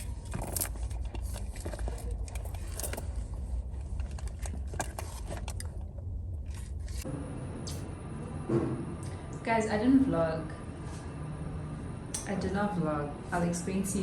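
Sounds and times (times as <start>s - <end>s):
clicks and rustling of handling: 0.0s - 7.0s
steady low rumble: 0.0s - 14.0s.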